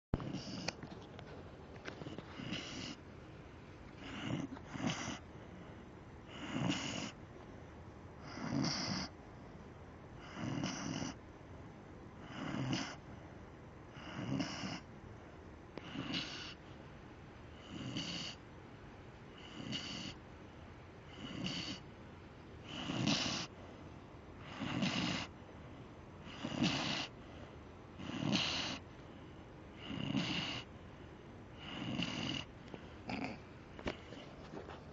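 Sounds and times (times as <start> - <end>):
dog snoring: 0.2 - 1.0, 1.8 - 3.0, 3.9 - 7.2, 8.2 - 9.2, 10.1 - 11.2, 12.2 - 13.2, 13.9 - 16.7, 17.5 - 18.4, 19.3 - 20.2, 21.0 - 21.9, 22.6 - 23.7, 24.4 - 25.4, 26.2 - 30.8, 31.5 - 34.9.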